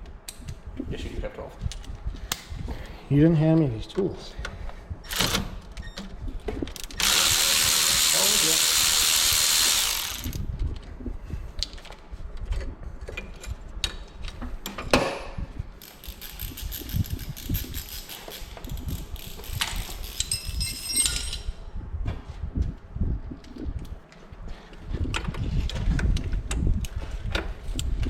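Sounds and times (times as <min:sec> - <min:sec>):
hand tools clinking on metal: 0:15.8 - 0:21.5.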